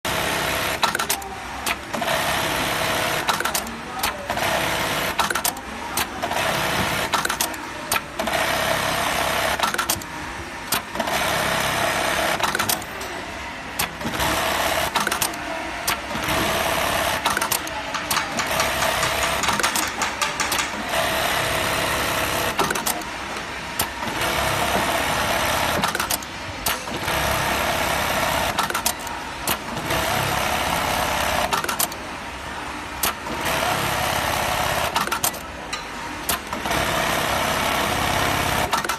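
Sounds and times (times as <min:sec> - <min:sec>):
sewing machine stitching: 0:00.1 - 0:10.0, 0:10.7 - 0:13.0, 0:13.8 - 0:23.1, 0:36.3 - 0:38.9
sewing machine clicks: 0:13.8 - 0:23.1.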